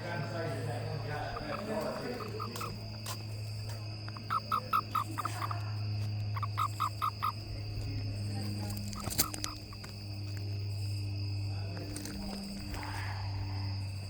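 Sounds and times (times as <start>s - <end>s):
steady low hum: 0.0s - 14.0s
toad chirping: 0.8s - 11.0s.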